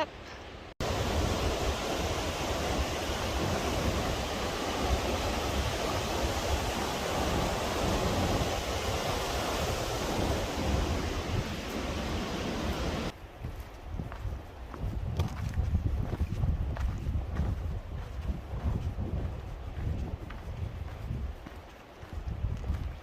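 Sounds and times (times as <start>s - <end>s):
river water rushing: 0.8s - 13.2s
wind rumble on microphone: 0.8s - 23.0s.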